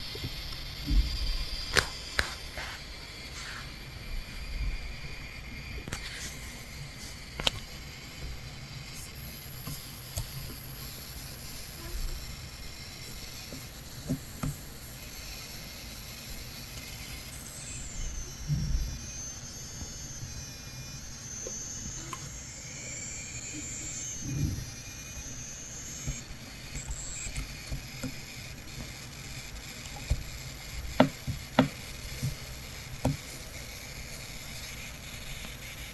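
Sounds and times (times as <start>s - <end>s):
high-pitched coil whine: 0.0s - 35.9s.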